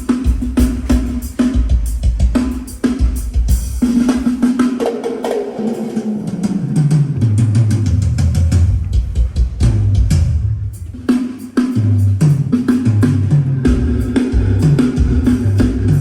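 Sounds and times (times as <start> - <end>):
kick and snare drum strokes: 0.0 - 16.0
tom drum fill: 12.3 - 16.0.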